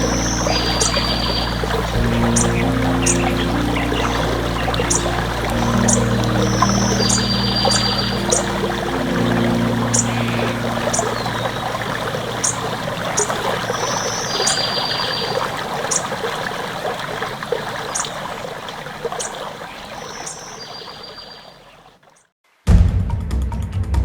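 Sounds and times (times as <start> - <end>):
bird chirps and trills: 0.0 - 16.3, 17.8 - 18.2, 19.1 - 22.3
stream water trickling: 0.0 - 22.4.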